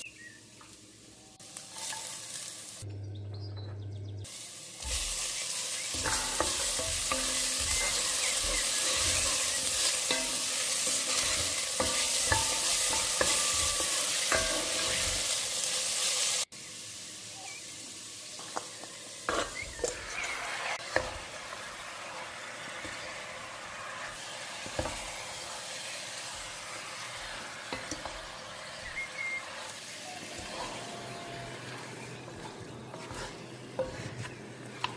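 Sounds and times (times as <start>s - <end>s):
food sizzling in a pan: 0.0s - 2.9s, 4.2s - 34.9s
utensil stirring and scraping: 4.8s - 15.5s, 26.2s - 34.9s.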